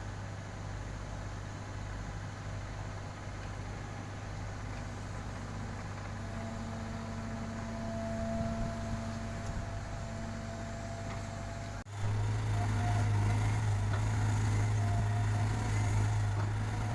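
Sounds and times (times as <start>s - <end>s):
heavy diesel engine running: 4.0s - 16.9s
thin steady whine: 4.1s - 13.6s.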